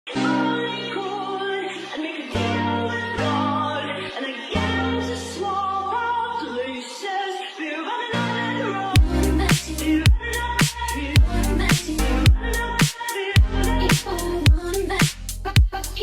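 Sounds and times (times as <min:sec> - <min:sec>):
person singing: 0:00.1 - 0:16.0
sustained bass notes: 0:09.0 - 0:12.8, 0:13.4 - 0:16.0.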